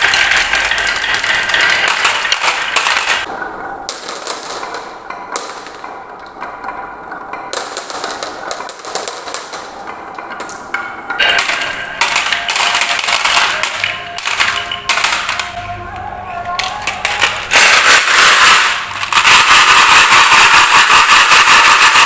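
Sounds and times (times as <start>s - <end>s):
marbles clattering down tracks: 0.0s - 3.3s, 11.2s - 22.0s.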